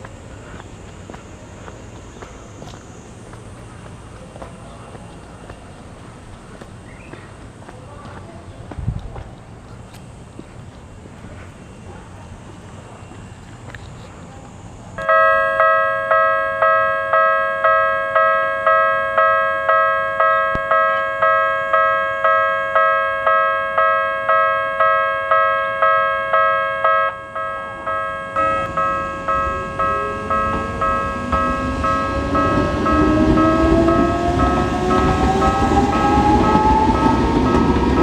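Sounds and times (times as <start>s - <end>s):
approaching train rumble and whine: 0.0s - 38.0s
level crossing electronic bell: 15.0s - 38.0s.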